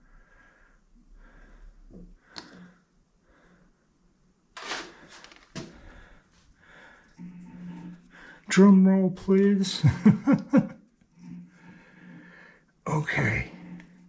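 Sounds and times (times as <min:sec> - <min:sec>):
short rustle: 0:04.6 - 0:05.8.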